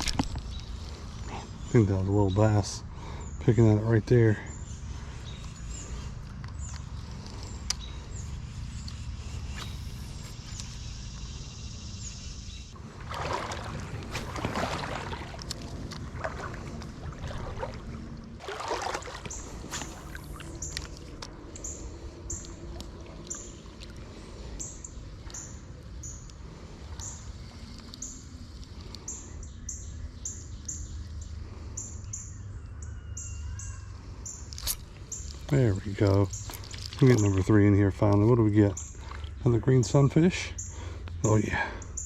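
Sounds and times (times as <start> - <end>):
running water: 12.8 - 20.9
water sloshing and splashing: 12.8 - 21.4, 34.7 - 39.6
small bird chirping: 28.9 - 39.0.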